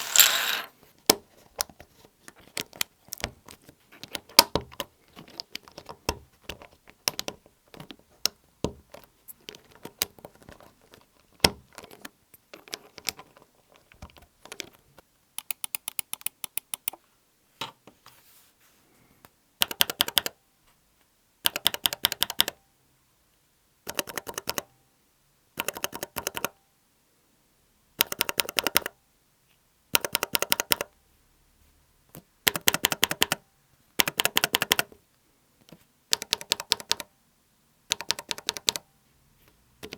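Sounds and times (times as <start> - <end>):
mechanical keyboard switches clacking: 37.9 - 38.8.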